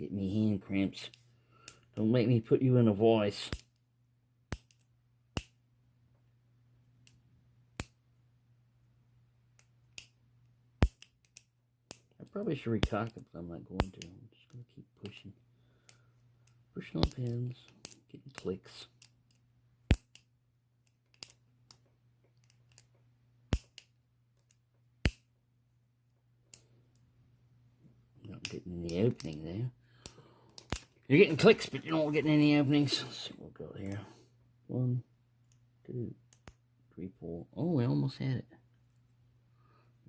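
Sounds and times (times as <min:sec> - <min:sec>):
lock pick clicking pins: 0:10.8 - 0:12.2, 0:18.9 - 0:22.9.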